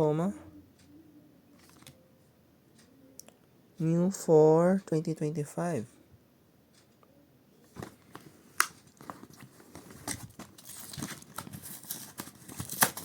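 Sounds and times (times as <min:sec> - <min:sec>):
plastic crinkling: 0:07.7 - 0:13.0
card tearing with clicks: 0:10.0 - 0:13.0.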